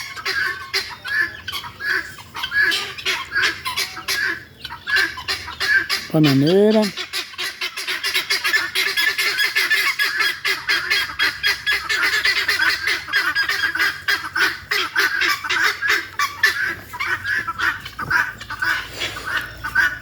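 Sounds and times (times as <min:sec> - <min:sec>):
guinea fowl calling: 0:00.0 - 0:20.0.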